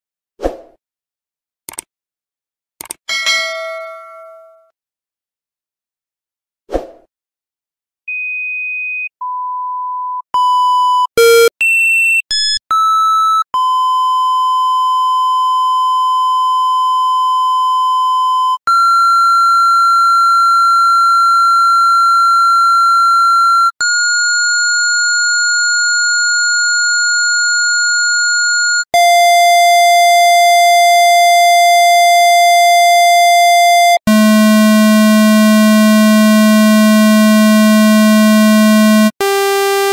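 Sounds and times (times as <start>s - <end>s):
click: 1.7s - 1.9s, 2.8s - 3.0s.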